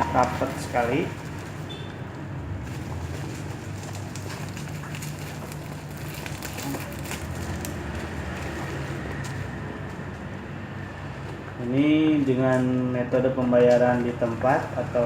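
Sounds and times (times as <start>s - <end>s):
plastic package crackling: 0.0s - 1.8s, 2.6s - 9.5s.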